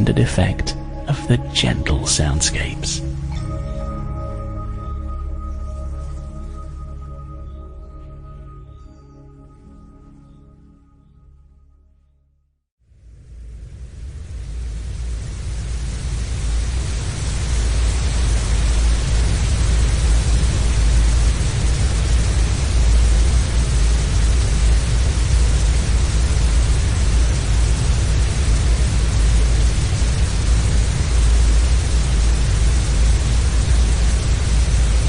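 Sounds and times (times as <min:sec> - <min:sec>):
deep synthetic bass noise: 0:00.0 - 0:10.9, 0:12.9 - 0:35.0.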